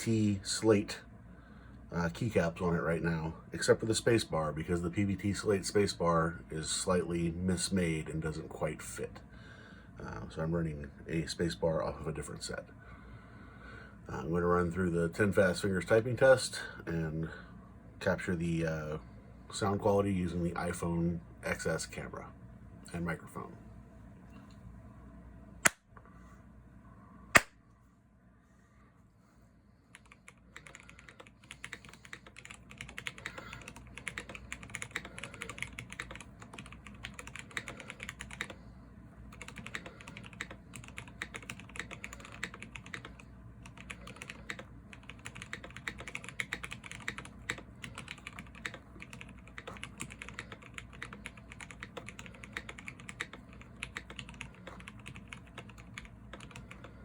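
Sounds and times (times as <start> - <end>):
fast typing on mechanical keyboard: 29.9 - 38.6, 39.3 - 57.0.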